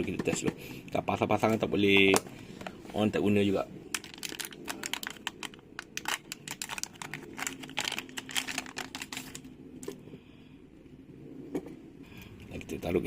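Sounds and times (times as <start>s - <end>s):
small hard parts clicking and rattling: 3.9s - 9.4s.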